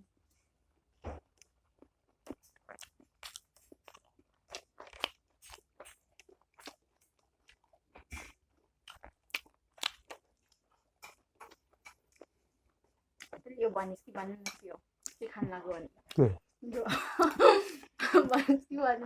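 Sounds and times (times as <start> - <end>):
crunchy chewing of food: 1.1 - 15.2.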